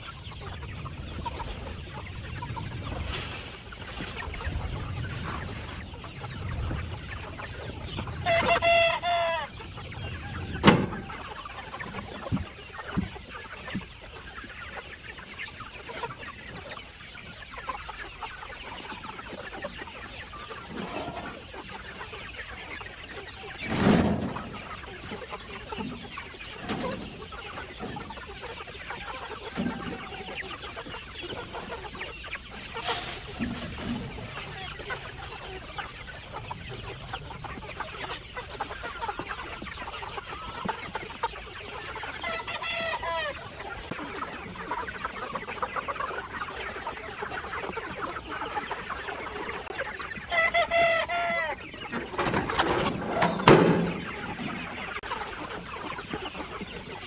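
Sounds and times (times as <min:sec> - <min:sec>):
chickens clucking: 0:00.0 - 0:57.0
rooster crowing: 0:08.2 - 0:09.6, 0:42.2 - 0:43.4.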